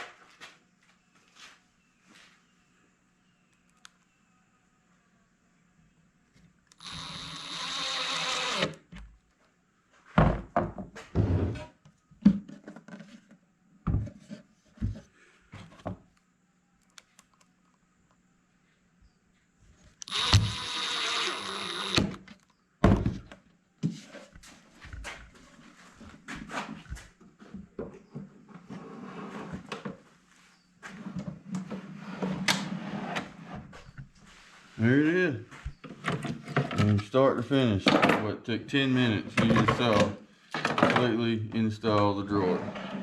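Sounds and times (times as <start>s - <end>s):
drill driver driving screws: 6.7s - 8.9s, 20.0s - 22.3s.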